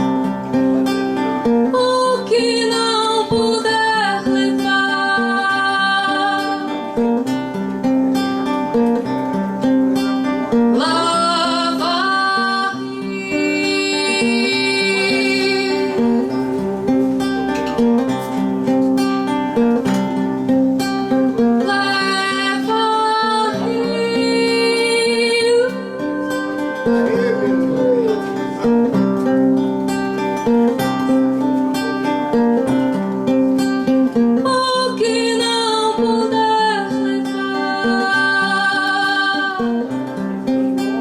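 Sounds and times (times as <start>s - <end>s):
acoustic guitar playing: 0.0s - 41.0s
person singing long notes: 1.7s - 7.1s, 10.6s - 18.0s, 21.6s - 29.0s, 34.4s - 40.0s.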